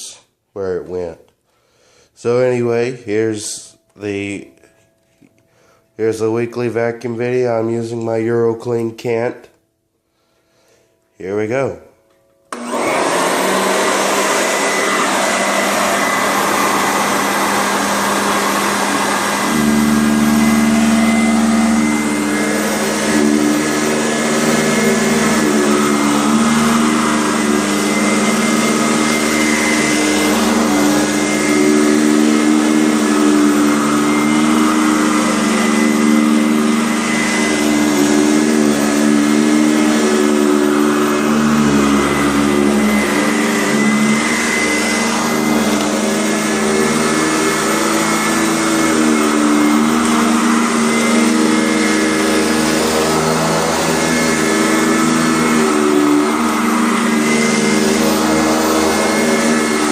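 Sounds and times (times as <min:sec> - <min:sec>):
vacuum cleaner motor whine: 0:12.5 - 0:59.9.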